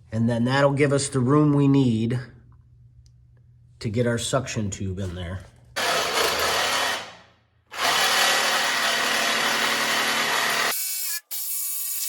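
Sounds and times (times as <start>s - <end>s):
power tool cutting steel: 7.8s - 12.0s.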